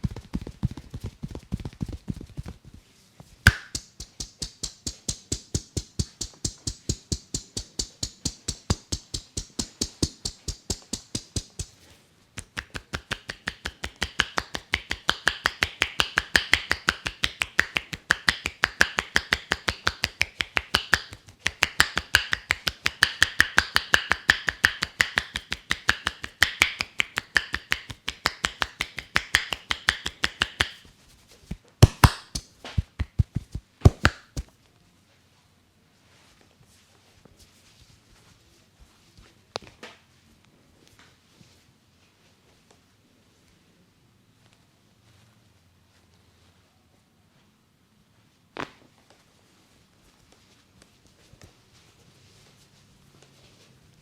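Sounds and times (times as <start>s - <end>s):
sharp snap: 3.4s - 30.8s, 31.6s - 34.5s
hands slapping head: 3.5s - 30.9s, 31.5s - 34.5s.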